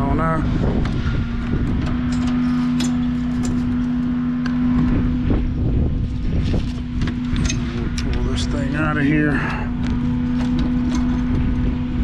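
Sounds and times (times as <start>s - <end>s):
heat pump humming: 0.0s - 12.0s.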